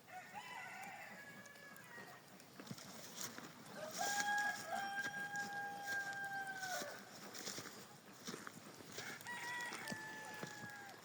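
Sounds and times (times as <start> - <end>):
rooster crowing: 0.1 - 2.2, 3.8 - 7.1, 9.0 - 11.0.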